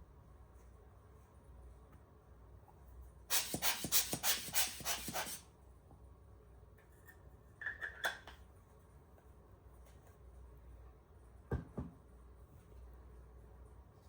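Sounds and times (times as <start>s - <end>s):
rubbing strokes on camera gear: 3.3s - 5.4s.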